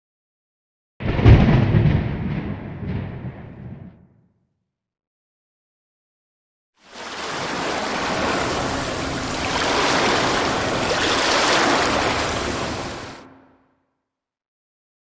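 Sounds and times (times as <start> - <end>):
synthesized ocean surf: 6.8 - 13.7.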